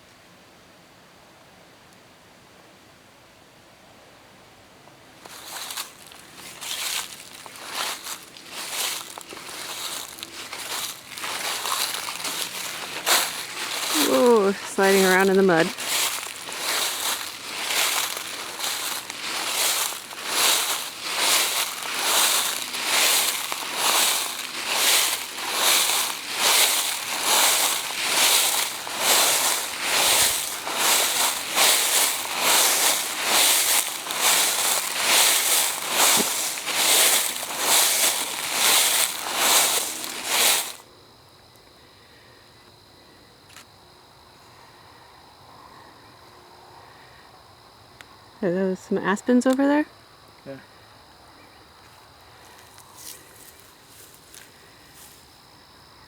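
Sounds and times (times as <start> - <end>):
footsteps crunching through dry leaves: 5.2 - 40.9, 52.4 - 55.3
crickets chirping: 5.2 - 56.0.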